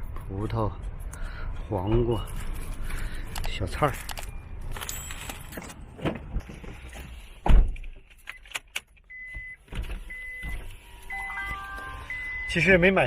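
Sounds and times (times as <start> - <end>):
car electronic beep: 9.1 - 13.0.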